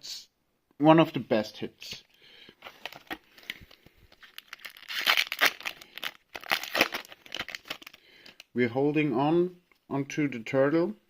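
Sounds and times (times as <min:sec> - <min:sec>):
plastic packaging crinkling: 0:02.6 - 0:08.5.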